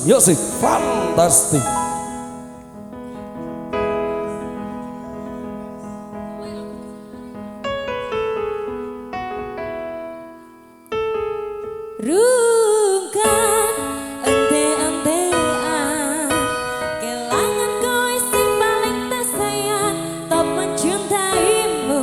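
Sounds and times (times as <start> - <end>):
electric keyboard chords: 0.0 - 22.0
woman singing: 12.0 - 22.0.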